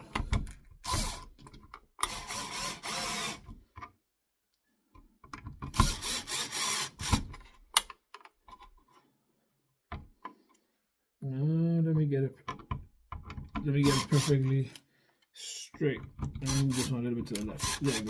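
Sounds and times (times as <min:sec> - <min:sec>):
screwdriver ratchet whirring: 0:00.8 - 0:01.3, 0:02.0 - 0:03.5, 0:05.6 - 0:07.3, 0:13.8 - 0:14.5, 0:16.3 - 0:18.0.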